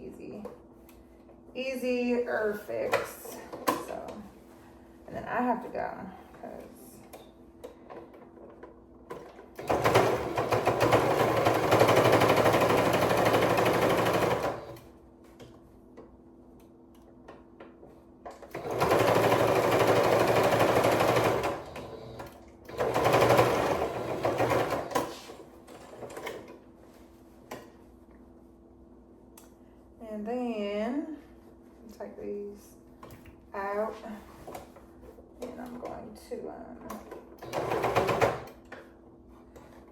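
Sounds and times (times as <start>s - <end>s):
sewing machine stitching: 9.1s - 14.9s, 18.3s - 26.6s, 37.0s - 38.6s.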